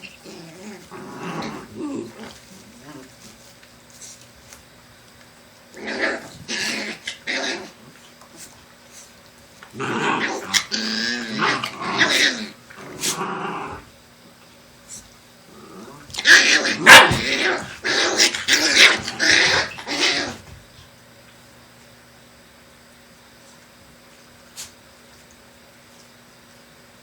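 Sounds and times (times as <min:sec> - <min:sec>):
dogs growling and barking: 0:00.0 - 0:03.4, 0:05.7 - 0:08.6, 0:09.6 - 0:14.0, 0:15.4 - 0:20.6.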